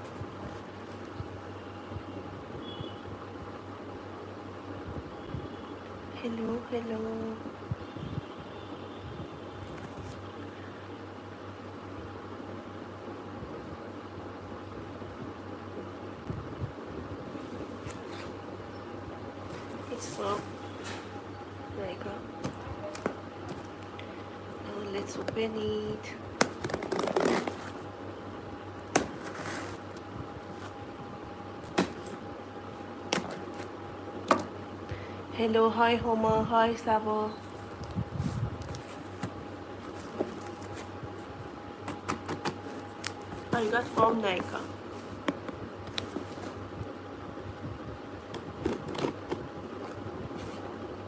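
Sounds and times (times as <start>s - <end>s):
steady low hum: 0.0s - 51.0s
package rustling and tapping: 22.4s - 24.0s, 26.4s - 27.8s, 28.9s - 29.8s, 31.6s - 32.2s, 33.1s - 34.6s, 41.8s - 44.6s, 45.2s - 46.6s, 48.4s - 50.0s
parcel rustling: 26.3s - 27.9s, 28.8s - 31.0s, 31.6s - 33.9s, 37.4s - 46.8s.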